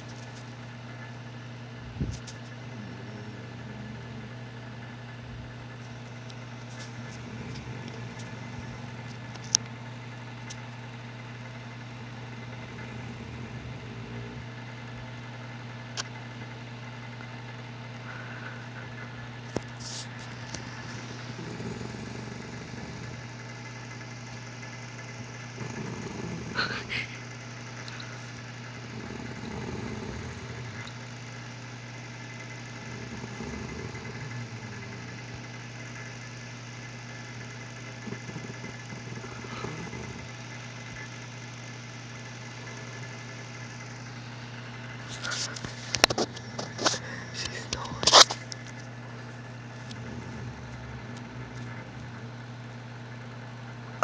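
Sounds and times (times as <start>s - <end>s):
steady low hum: 0.0s - 54.0s
woman snoring: 2.6s - 9.6s, 11.8s - 14.9s, 18.0s - 19.0s, 20.4s - 23.6s, 25.6s - 31.4s, 32.1s - 41.1s, 46.4s - 48.0s, 49.8s - 52.4s.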